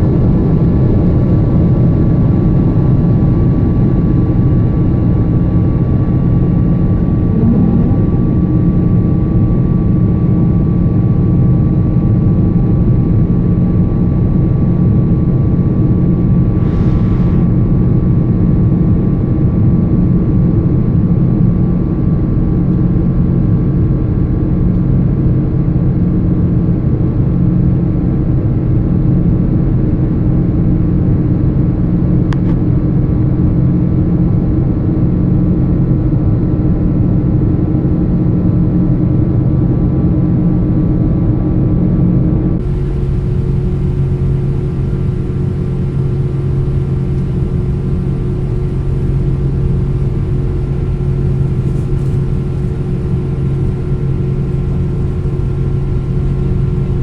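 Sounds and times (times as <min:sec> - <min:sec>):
low hum: 0:00.0 - 0:19.4, 0:39.0 - 0:57.0
jet engine drone in cabin: 0:00.0 - 0:57.0.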